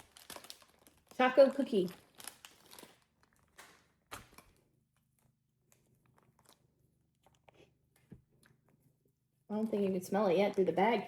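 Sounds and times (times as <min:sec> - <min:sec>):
plastic packet crinkling: 0:00.0 - 0:07.4.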